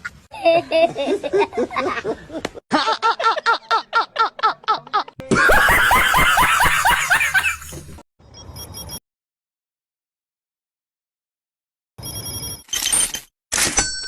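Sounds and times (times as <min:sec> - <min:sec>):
repeated ha-ha laughter: 0:00.3 - 0:08.0
harsh loud laugh: 0:00.4 - 0:08.0.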